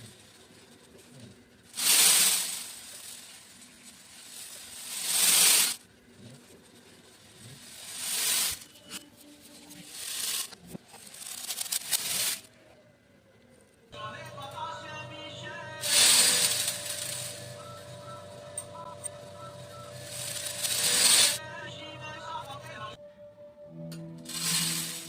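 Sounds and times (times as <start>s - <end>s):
beads pouring onto beads: 0.0s - 9.0s, 9.6s - 12.5s, 15.8s - 21.4s, 24.3s - 25.0s.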